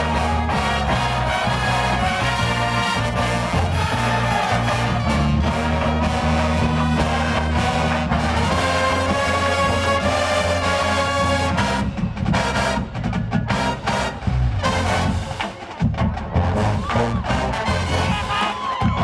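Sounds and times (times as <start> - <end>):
brass melody: 0.0 - 15.6, 16.4 - 18.7
bass line: 0.0 - 19.0
drums steady beat: 0.0 - 19.0.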